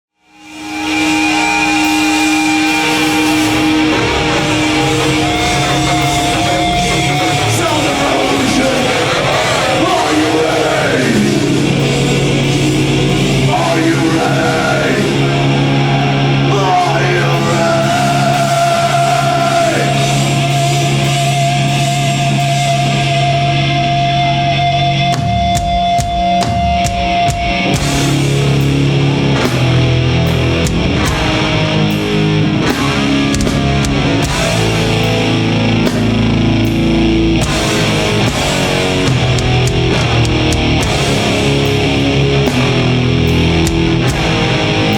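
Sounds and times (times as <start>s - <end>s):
distorted guitar notes: 0.2s - 44.9s
drum and cymbal hits: 0.4s - 14.4s, 25.0s - 44.9s.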